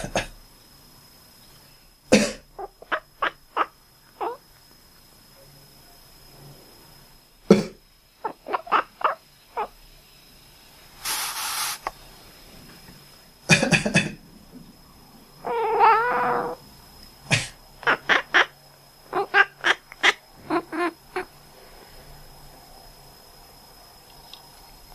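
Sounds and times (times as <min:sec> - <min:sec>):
person coughing: 0:00.0 - 0:00.4, 0:02.1 - 0:02.4, 0:13.5 - 0:14.2, 0:17.3 - 0:17.6
cat chirping: 0:08.2 - 0:09.7, 0:15.4 - 0:16.6, 0:19.1 - 0:21.3
noisy hiss-like burst: 0:09.3 - 0:14.4
cat wavering call: 0:15.4 - 0:16.6.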